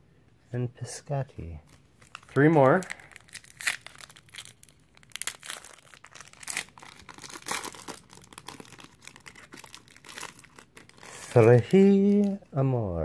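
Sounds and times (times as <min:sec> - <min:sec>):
card wrapper crinkling: 0:01.6 - 0:12.5.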